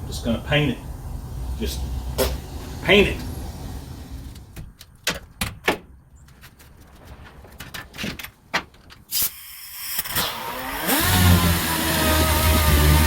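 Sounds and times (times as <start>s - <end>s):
hiss: 0.8s - 4.4s, 9.1s - 11.4s.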